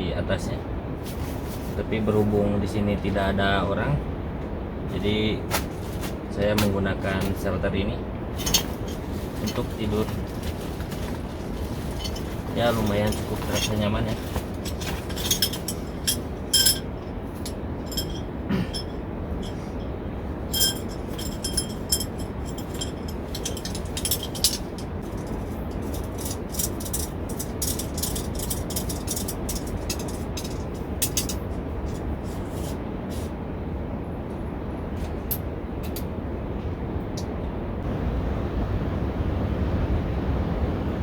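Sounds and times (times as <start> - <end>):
steady low rumble: 0.0 - 41.0
camping gear clicking and clinking: 5.5 - 7.4, 8.3 - 33.3.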